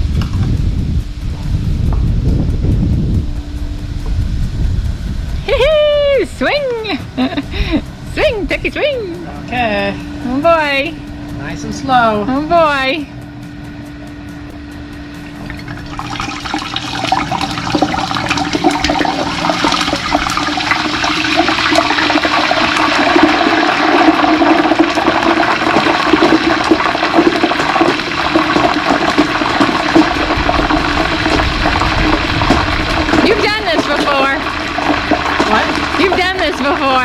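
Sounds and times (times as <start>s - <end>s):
hot oil bubbling and sizzling: 0.0s - 6.6s, 15.1s - 37.0s.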